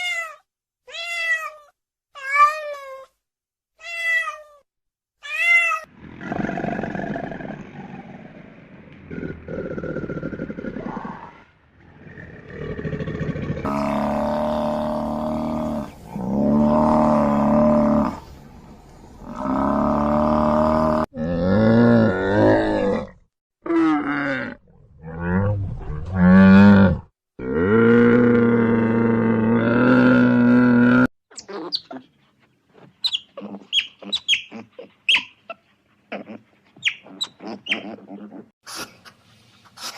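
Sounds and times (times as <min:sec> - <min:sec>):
large animal growling: 0:05.9 - 0:18.4, 0:19.2 - 0:31.1.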